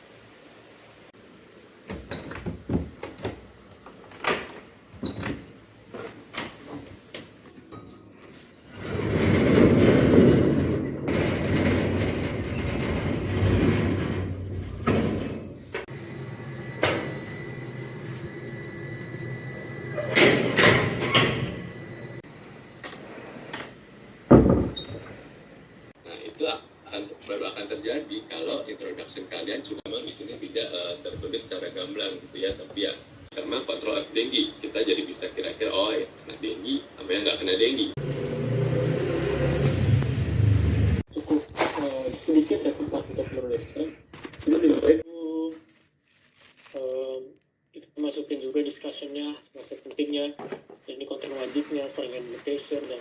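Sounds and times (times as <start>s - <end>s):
heavy thump: 24.3s - 24.8s.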